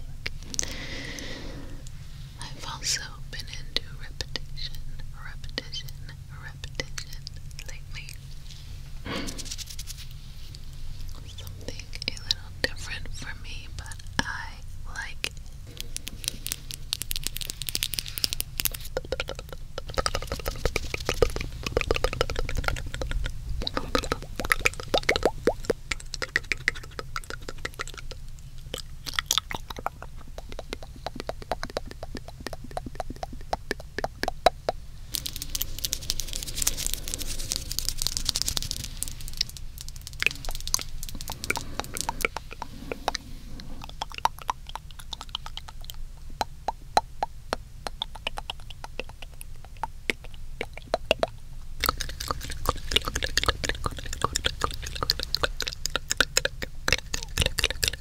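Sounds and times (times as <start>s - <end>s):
breathy hiss: 0.0s - 6.6s, 8.3s - 22.4s, 34.5s - 44.1s
tongue clicks and lip smacks: 3.4s - 8.3s, 9.1s - 58.0s.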